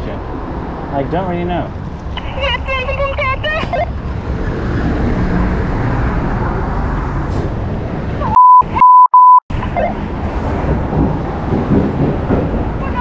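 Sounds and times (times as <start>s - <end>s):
outdoor background noise: 0.0s - 8.8s, 9.5s - 13.0s
censor bleep: 8.3s - 9.9s.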